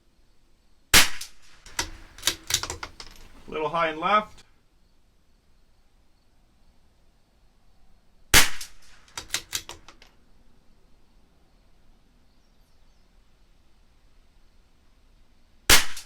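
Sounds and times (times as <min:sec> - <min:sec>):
rifle shot crack: 0:00.9 - 0:04.2, 0:08.3 - 0:09.9, 0:15.7 - 0:16.0
rifle bolt metallic clicks: 0:01.0 - 0:04.4, 0:08.4 - 0:10.2.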